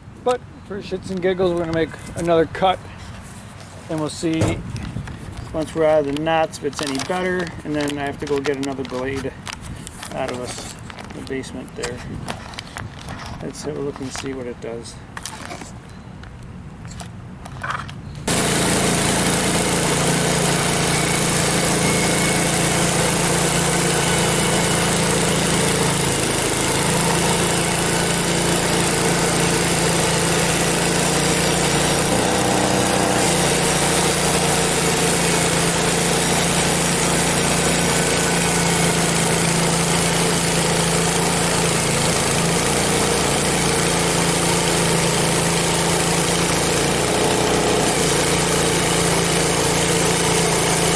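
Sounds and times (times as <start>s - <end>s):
sawmill engine and blade cutting log: 3.9s - 4.7s, 5.6s - 9.3s, 18.3s - 50.9s.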